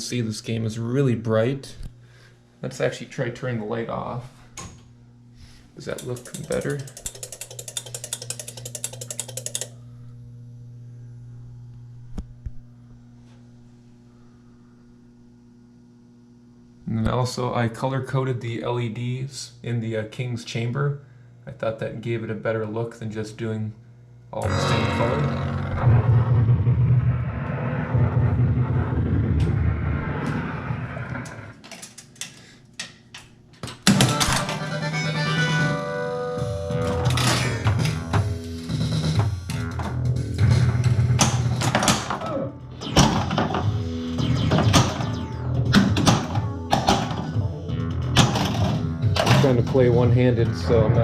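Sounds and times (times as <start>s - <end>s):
pinball machine electrical hum: 0.0s - 51.0s
rapid mechanical clicks: 5.8s - 9.8s
sharp clicks: 5.9s - 9.7s
low rumbling electronic sound effect: 24.4s - 31.6s, 42.2s - 48.2s.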